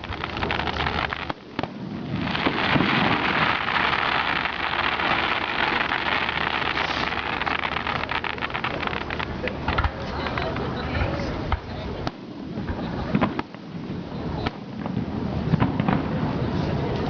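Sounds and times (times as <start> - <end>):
fireworks crackling: 0.0 - 17.0.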